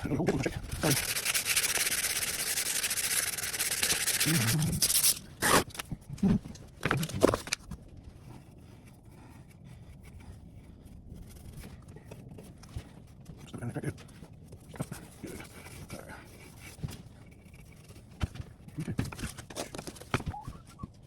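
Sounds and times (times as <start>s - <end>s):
sandpaper rubbing on wood: 0.7s - 5.6s.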